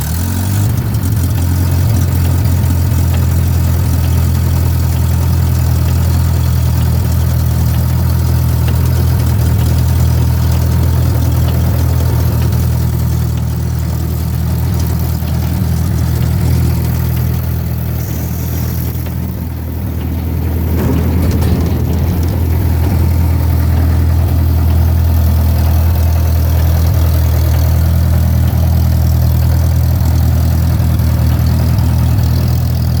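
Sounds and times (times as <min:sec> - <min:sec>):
pump engine droning: 0:00.0 - 0:33.0.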